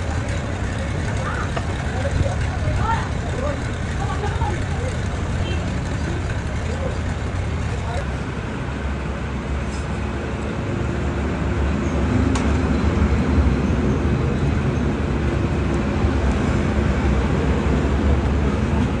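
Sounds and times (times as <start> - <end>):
small engine idling: 0.0 - 9.5.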